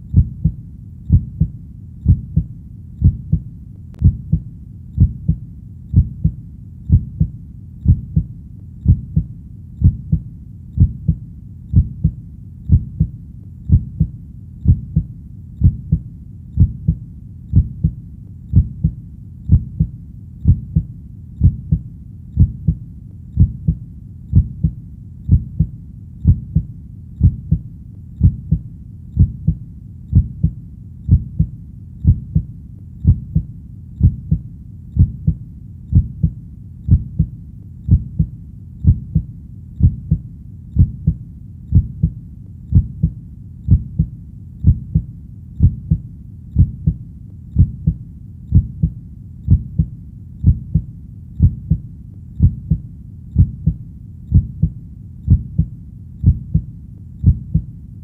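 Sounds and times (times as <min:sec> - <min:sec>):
heartbeat thumps: 0:00.0 - 0:57.7.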